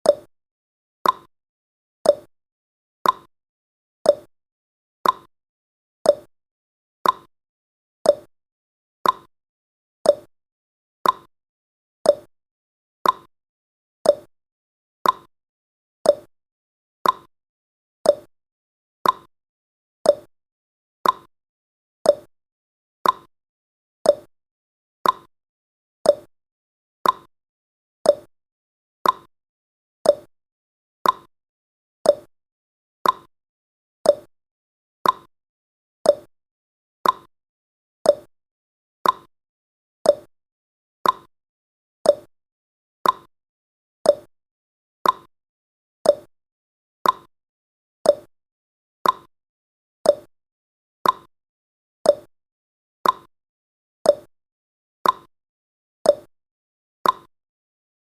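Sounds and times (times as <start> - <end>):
clock tick-tock: 0.0 - 0.3, 1.0 - 1.3, 2.1 - 2.3, 3.0 - 3.3, 4.1 - 4.3, 5.0 - 5.3, 6.1 - 6.3, 7.0 - 7.3, 8.1 - 8.3, 9.0 - 9.3, 10.0 - 10.3, 11.0 - 11.3, 12.1 - 12.3, 13.0 - 13.3, 14.0 - 14.3, 15.0 - 15.3, 16.1 - 16.3, 17.0 - 17.3, 18.0 - 18.3, 19.0 - 19.3, 20.0 - 20.3, 21.0 - 21.3, 22.0 - 22.3, 23.0 - 23.3, 24.0 - 24.3, 25.0 - 25.3, 26.0 - 26.3, 27.0 - 27.3, 28.0 - 28.3, 29.0 - 29.3, 30.0 - 30.3, 31.0 - 31.3, 32.0 - 32.3, 33.0 - 33.3, 34.0 - 34.3, 35.0 - 35.3, 36.0 - 36.3, 37.0 - 37.3, 38.0 - 38.3, 39.0 - 39.3, 40.0 - 40.3, 41.0 - 41.3, 42.0 - 42.3, 43.0 - 43.3, 44.0 - 44.3, 45.0 - 45.3, 46.0 - 46.3, 47.0 - 47.3, 48.0 - 48.3, 49.0 - 49.3, 50.1 - 50.3, 51.0 - 51.3, 52.1 - 52.3, 53.0 - 53.3, 54.1 - 54.3, 55.0 - 55.3, 56.1 - 56.3, 57.0 - 57.3.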